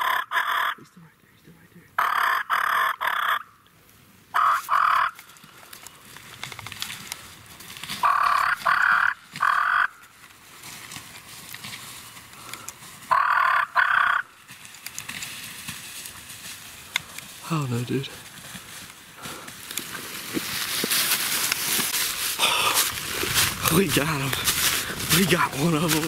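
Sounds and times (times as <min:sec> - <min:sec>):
turkey yelping: 0:00.0 - 0:00.8, 0:02.0 - 0:03.5, 0:04.4 - 0:05.2, 0:08.0 - 0:10.0, 0:13.1 - 0:14.3.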